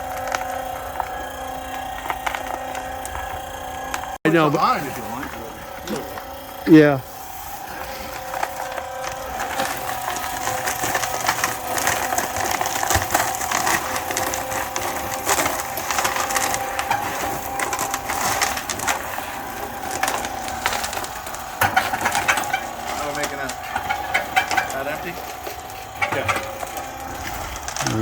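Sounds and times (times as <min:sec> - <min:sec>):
concrete mixer drum churning: 0:00.0 - 0:28.0
motor hum: 0:00.0 - 0:28.0.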